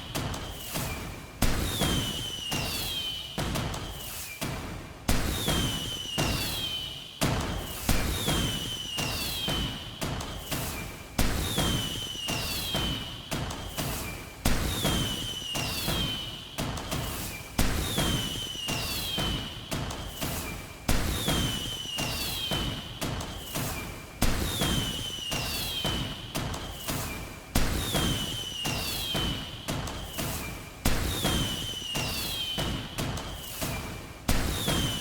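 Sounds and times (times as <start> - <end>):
falling firework whistle: 0.1 - 35.0
firework bangs: 17.0 - 35.0
firework crackling: 23.3 - 35.0.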